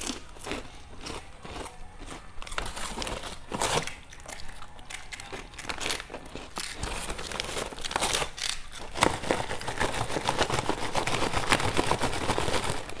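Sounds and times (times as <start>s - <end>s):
crispy food crunching: 0.0s - 13.0s.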